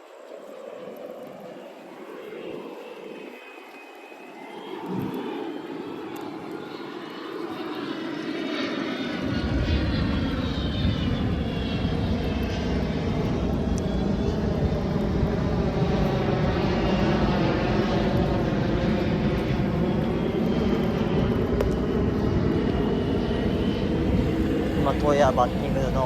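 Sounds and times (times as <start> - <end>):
aircraft engine rushing overhead: 0.0 - 26.0
deep rumble: 9.2 - 26.0.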